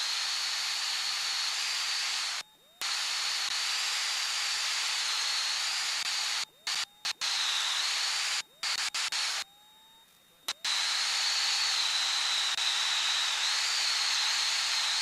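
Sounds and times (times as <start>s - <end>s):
thin high whine: 0.0s - 15.0s.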